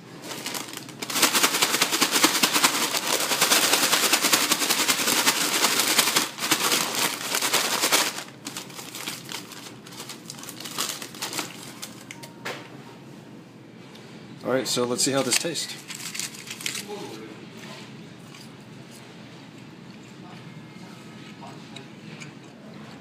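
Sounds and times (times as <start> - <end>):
fries shaken in paper bag: 0.1 - 12.0, 15.8 - 17.0
paper crinkling: 0.2 - 12.1, 15.8 - 16.9.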